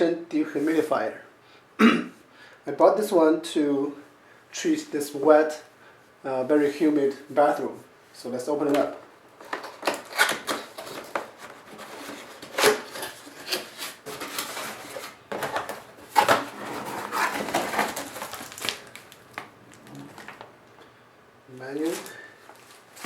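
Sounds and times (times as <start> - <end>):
packaging rustling and scraping: 9.4 - 20.5, 21.7 - 23.0
cardboard box being opened: 9.6 - 19.0.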